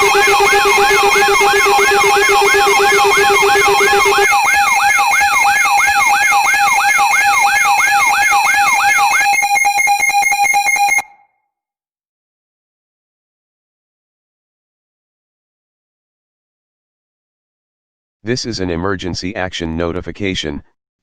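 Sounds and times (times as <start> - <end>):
low pulsing tone: 0.0 - 4.2
steady alert tone: 0.0 - 9.9
fast wailing siren: 0.0 - 11.2.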